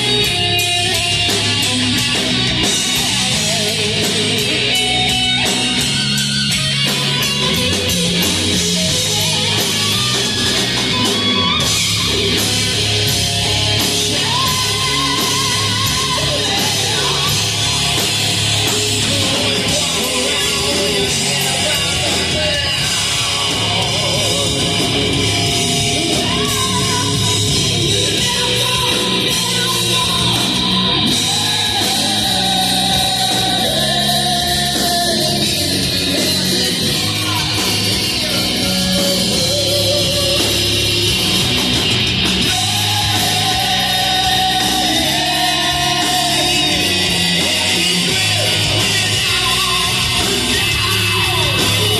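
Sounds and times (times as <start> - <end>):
distorted electric guitar: 0.0 - 51.9
live hard rock band: 0.0 - 51.9
person singing: 13.8 - 41.3, 42.4 - 51.9.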